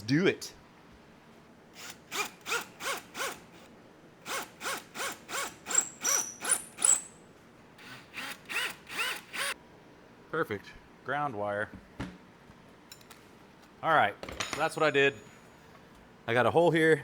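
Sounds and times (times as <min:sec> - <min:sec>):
power drill whining in pulses: 0:01.8 - 0:07.1, 0:07.8 - 0:09.6.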